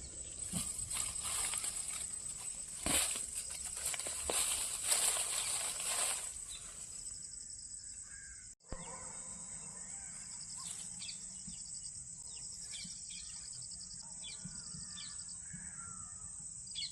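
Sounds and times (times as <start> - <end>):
insects trilling: 0.0 - 16.9
bird chirps: 5.2 - 16.9.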